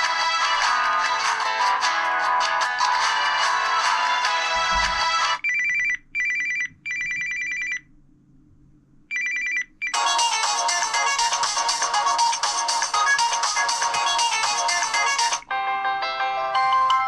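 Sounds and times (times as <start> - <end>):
musical ringtone: 0.0 - 7.8, 9.1 - 17.0
electronic phone ring: 5.4 - 7.8, 9.1 - 15.4.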